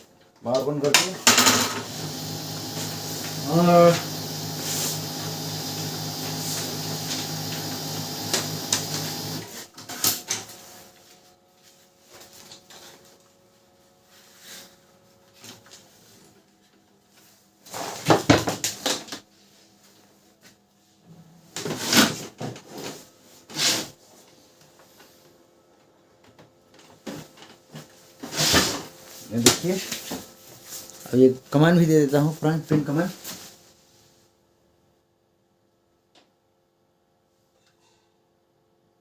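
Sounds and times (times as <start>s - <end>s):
laser printer whirring: 1.7s - 9.5s.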